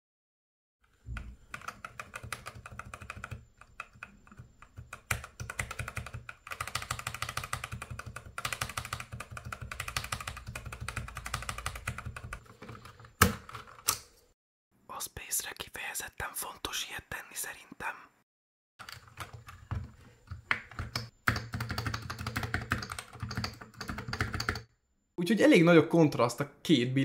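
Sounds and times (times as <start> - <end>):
typing on mechanical keyboard: 0.9 - 14.0, 18.8 - 24.7.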